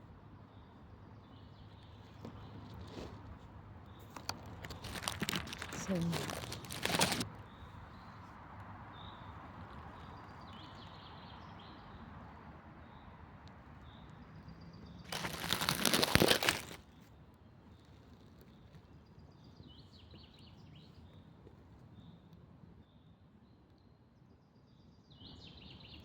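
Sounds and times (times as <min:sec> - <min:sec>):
small birds singing: 0:00.1 - 0:26.0
loud crackling rustle: 0:04.0 - 0:07.3, 0:15.1 - 0:17.0.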